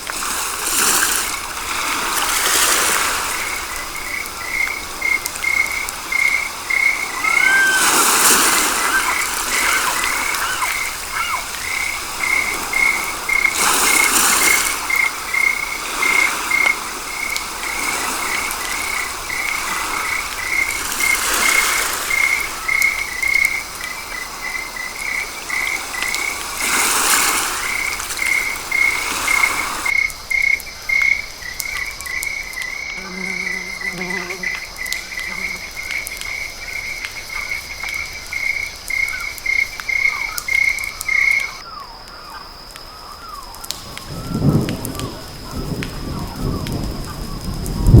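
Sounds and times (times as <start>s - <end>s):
high chirping call: 7.0s - 12.0s.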